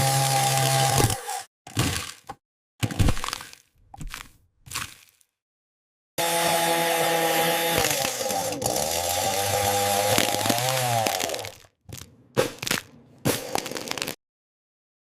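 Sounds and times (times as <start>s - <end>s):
chainsaw cutting: 0.0s - 1.5s, 6.2s - 11.7s
crunching bursts: 7.7s - 14.2s.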